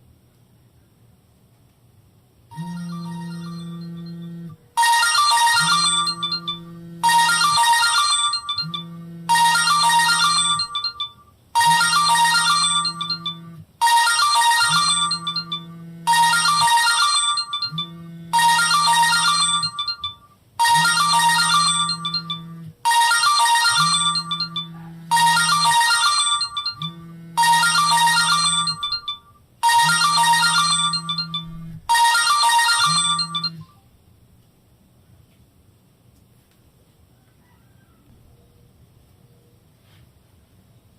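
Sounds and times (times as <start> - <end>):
mobile phone ringtone: 2.5 - 33.8.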